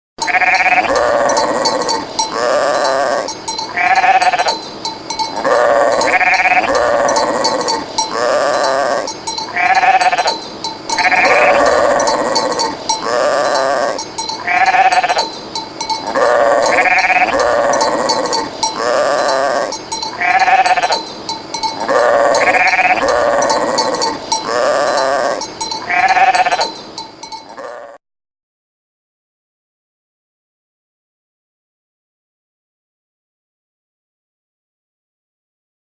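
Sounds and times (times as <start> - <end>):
sheep bleating: 0.2 - 4.6, 5.2 - 21.1, 21.7 - 26.8, 27.5 - 28.0.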